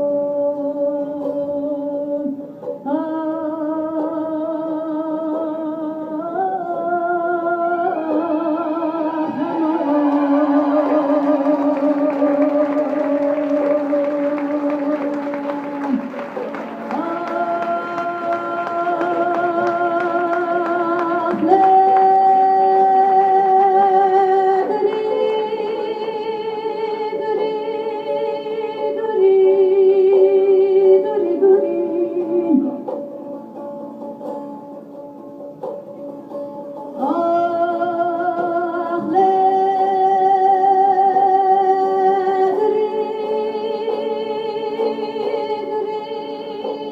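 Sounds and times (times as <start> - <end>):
woman singing folk song: 0.0 - 33.9, 36.7 - 46.9
instrumental accompaniment: 0.0 - 46.9
crowd noise: 8.0 - 37.2.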